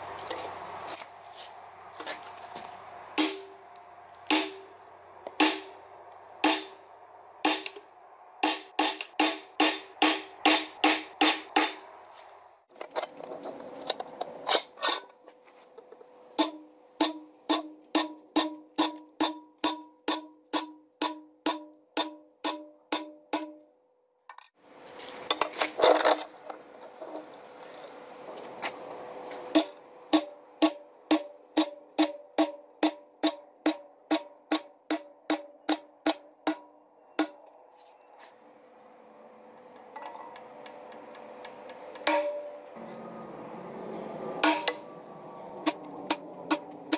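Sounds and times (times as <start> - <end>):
hammer striking steel on anvil: 3.2 - 3.6, 4.3 - 4.8, 5.4 - 5.8, 6.4 - 6.8, 7.4 - 7.8, 8.4 - 11.8, 16.4 - 23.6, 29.5 - 37.4, 42.0 - 42.7, 44.4 - 44.9.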